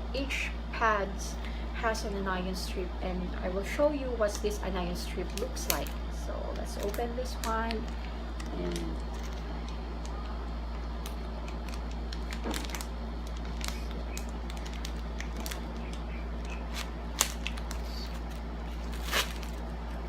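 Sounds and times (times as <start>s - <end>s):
steady low hum: 0.0s - 20.0s
plastic wrapper crinkling: 5.2s - 19.8s.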